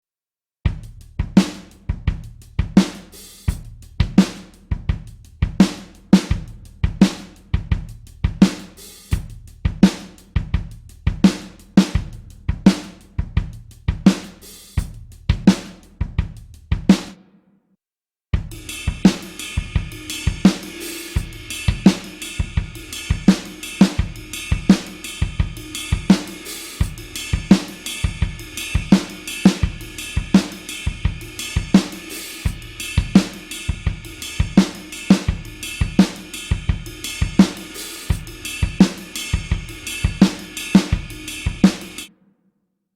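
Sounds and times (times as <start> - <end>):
kick drum: 0.7 - 2.8, 18.4 - 19.0
hi-hat and cymbals: 0.7 - 17.1, 18.4 - 42.1
rock drum beat: 0.7 - 17.2, 18.4 - 42.1
snare drum: 2.8 - 4.8, 14.0 - 17.4, 18.4 - 42.1.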